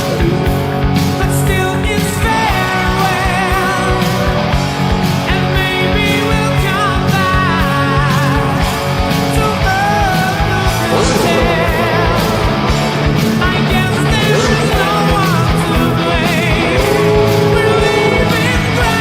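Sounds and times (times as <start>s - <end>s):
guitar: 0.0s - 19.0s
person singing: 9.3s - 19.0s
drum beat: 10.7s - 19.0s.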